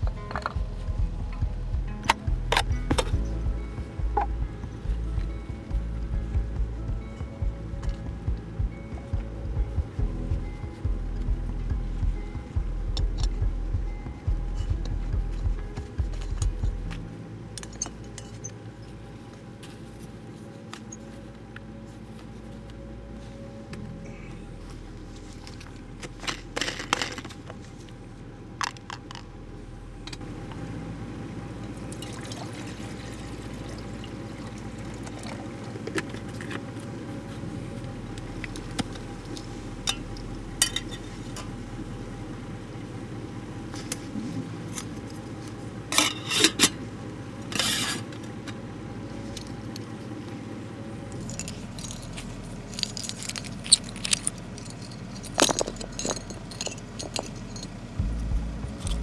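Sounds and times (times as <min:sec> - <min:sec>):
steady low hum: 0:00.0 - 0:59.0
small objects clicking and clinking: 0:26.2 - 0:27.6, 0:51.1 - 0:57.8
rattling bursts: 0:51.0 - 0:59.0.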